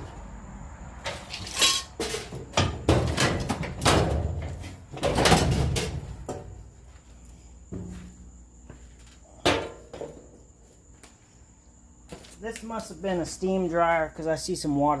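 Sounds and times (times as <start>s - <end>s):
sheet metal clanking and rattling: 1.1s - 6.4s.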